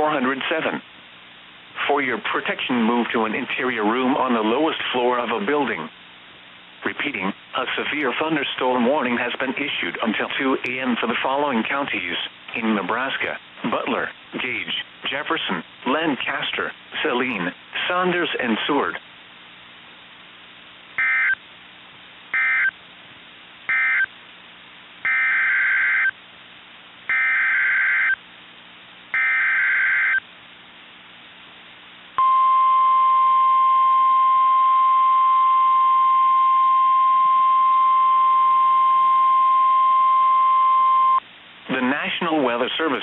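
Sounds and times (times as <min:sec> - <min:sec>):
steady alarm tone: 0:21.0 - 0:21.4, 0:22.4 - 0:22.7, 0:23.7 - 0:24.1, 0:25.0 - 0:26.2, 0:27.1 - 0:28.2, 0:29.2 - 0:30.2.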